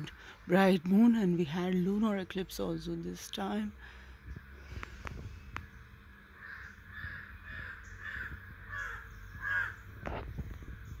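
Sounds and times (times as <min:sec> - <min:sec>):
crow cawing: 0:06.4 - 0:10.1.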